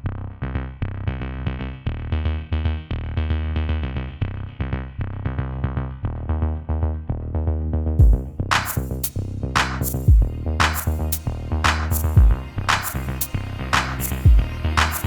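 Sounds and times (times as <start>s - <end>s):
bass line: 0.0s - 15.0s
heavy drum hits: 8.0s - 8.2s.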